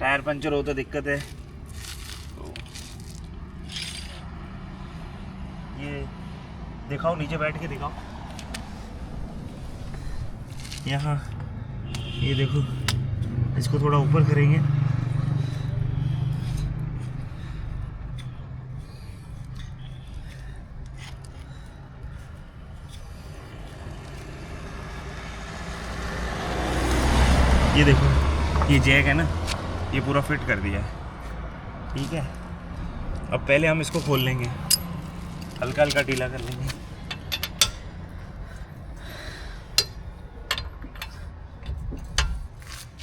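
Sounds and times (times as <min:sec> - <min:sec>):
low engine hum: 0:00.0 - 0:43.0
vehicle approaching: 0:00.0 - 0:43.0
wheel spanner clinking on nuts: 0:33.8 - 0:38.6, 0:39.6 - 0:43.0.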